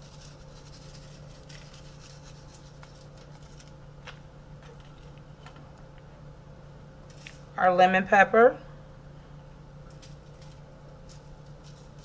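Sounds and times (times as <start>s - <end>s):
seasoning packet rustling: 0.0s - 5.2s, 9.8s - 12.0s
steady low hum: 0.0s - 12.0s.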